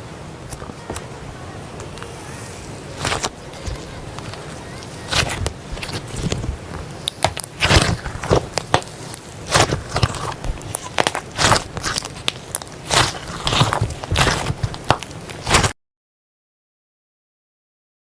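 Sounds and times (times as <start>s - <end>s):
slime squelching and popping: 3.0s - 15.8s.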